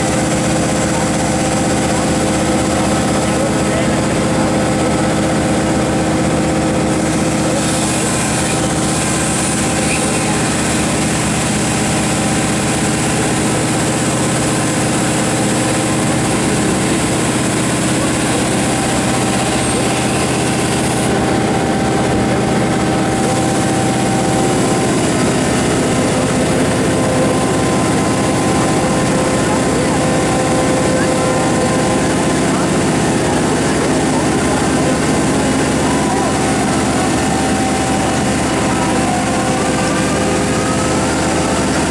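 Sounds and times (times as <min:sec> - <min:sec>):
large diesel engine running: 0:00.0 - 0:41.9.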